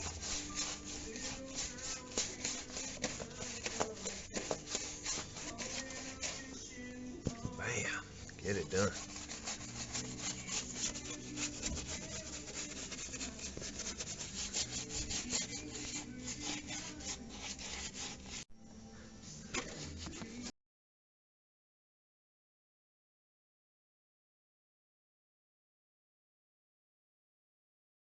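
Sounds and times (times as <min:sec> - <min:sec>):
brush scrubbing car wheel well: 0:00.0 - 0:06.6, 0:08.4 - 0:18.5.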